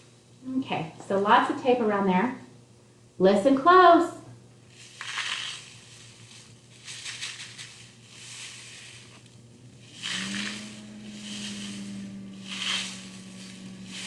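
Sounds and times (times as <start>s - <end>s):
rain stick rice pouring: 4.7s - 14.0s.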